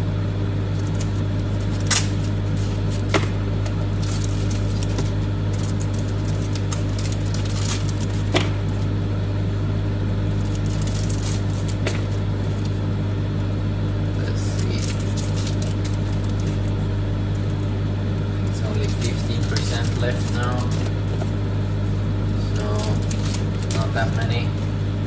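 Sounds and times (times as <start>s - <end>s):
microwave oven humming: 0.0s - 25.0s.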